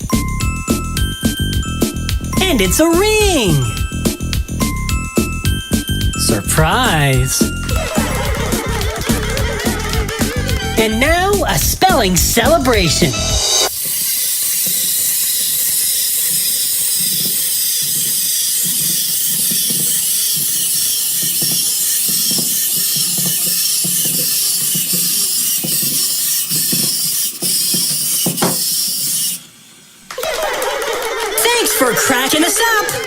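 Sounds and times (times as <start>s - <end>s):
loud steady hiss: 5.8s - 30.2s.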